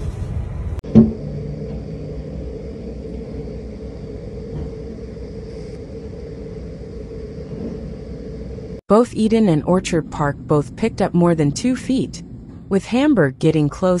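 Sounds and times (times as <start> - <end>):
engine running with hum: 0.0 - 8.8
brief knock: 0.9 - 1.2.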